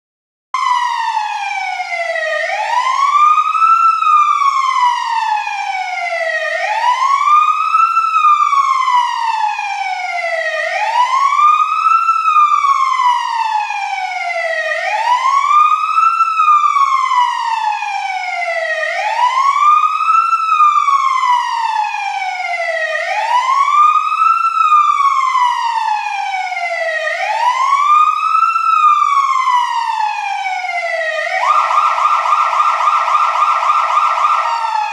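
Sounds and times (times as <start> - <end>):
fire truck siren wailing: 0.6 - 34.9.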